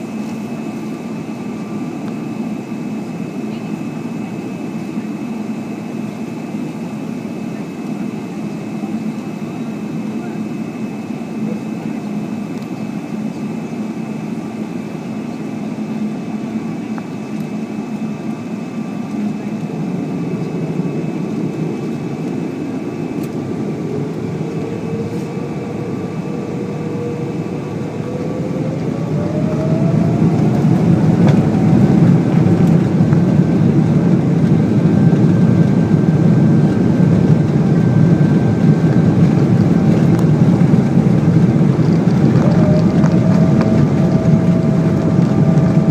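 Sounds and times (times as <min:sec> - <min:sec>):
jet engines spooling up: 0:00.0 - 0:45.9.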